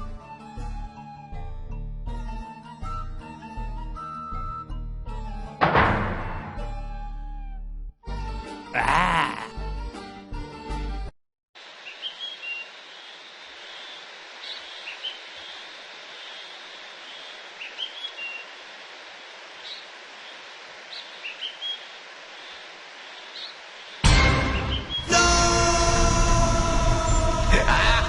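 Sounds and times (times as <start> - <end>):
steady outdoor hiss: 11.6 - 28.0
small birds chirping: 11.7 - 25.1.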